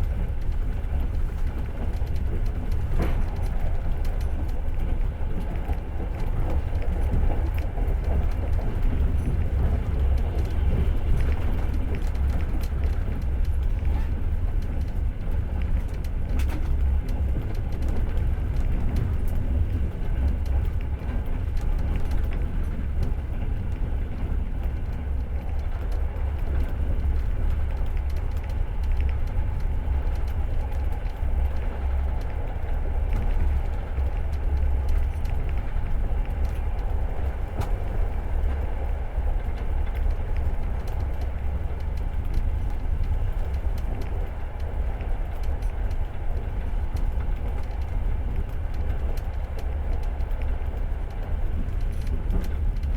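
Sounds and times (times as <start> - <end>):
train wheels rumbling on rails: 0.0 - 52.9.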